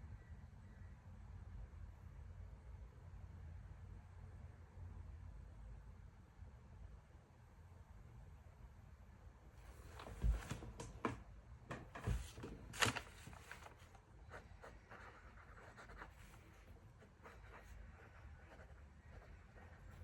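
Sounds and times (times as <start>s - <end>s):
pen writing on paper: 14.2s - 20.0s.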